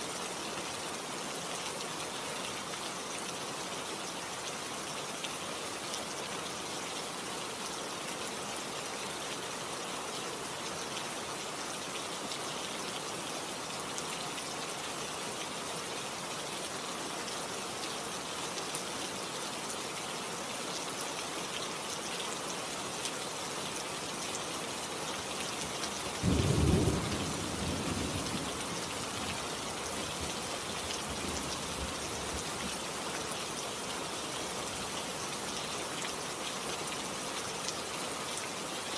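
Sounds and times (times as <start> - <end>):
steady rain: 0.0 - 38.9
low rumbling thunderclap: 26.2 - 28.8.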